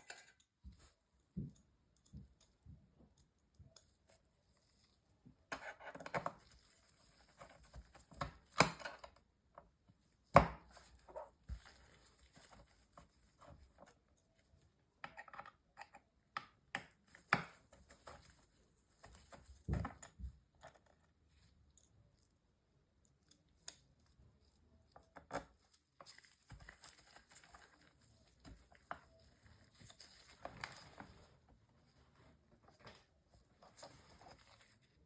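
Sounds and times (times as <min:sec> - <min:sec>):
small tools clicking and scraping: 0:00.0 - 0:04.3.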